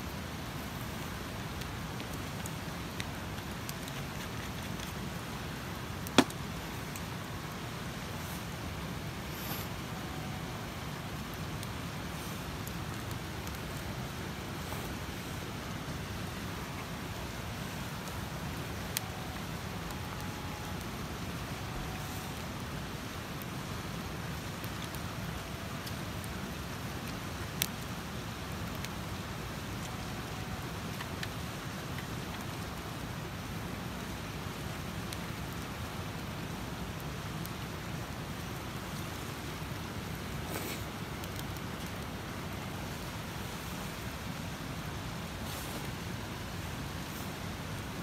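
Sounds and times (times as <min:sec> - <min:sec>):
campfire crackling: 0:00.0 - 0:48.0.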